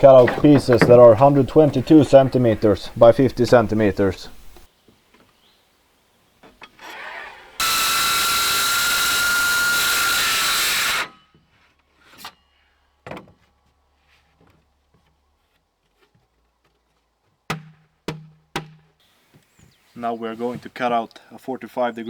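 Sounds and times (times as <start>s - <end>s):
power saw cutting plywood: 6.7s - 11.3s
sharp knocks: 17.5s - 18.9s.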